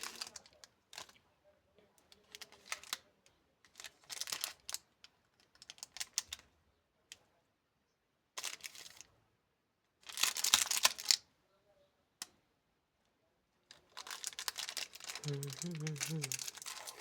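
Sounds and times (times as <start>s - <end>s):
candy packaging crinkling: 0.0s - 1.2s, 2.1s - 3.0s, 3.7s - 6.5s, 8.4s - 9.1s, 10.0s - 11.2s, 13.7s - 17.0s.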